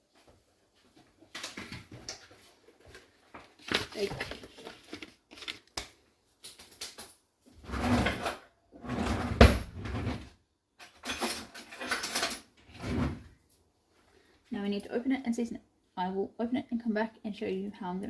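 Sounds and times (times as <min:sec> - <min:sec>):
sliding and rustling: 0:00.7 - 0:05.7.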